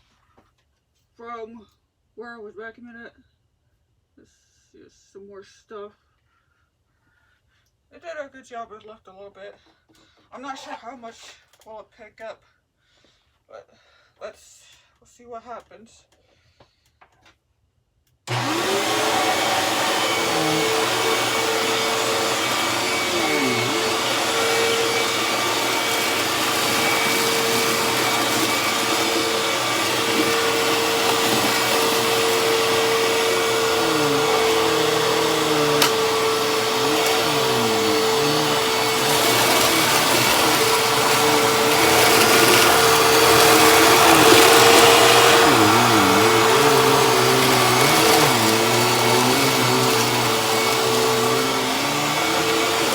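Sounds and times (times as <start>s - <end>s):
vacuum cleaner motor whine: 18.3s - 52.9s.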